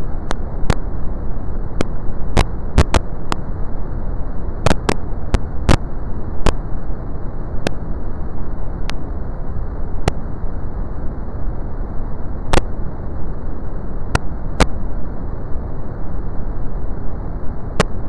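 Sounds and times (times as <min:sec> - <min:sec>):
sharp clicks: 0:02.8 - 0:03.0, 0:04.7 - 0:05.0.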